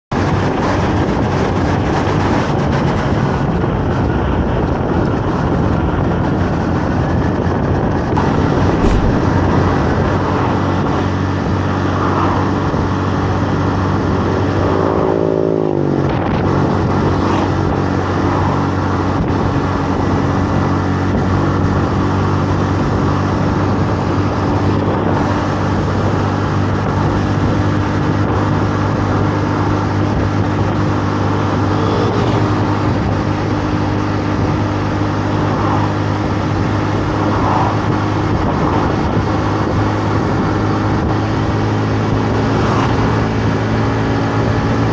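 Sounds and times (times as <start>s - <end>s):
wind rush on microphone: 8.0s - 11.1s, 16.1s - 44.9s.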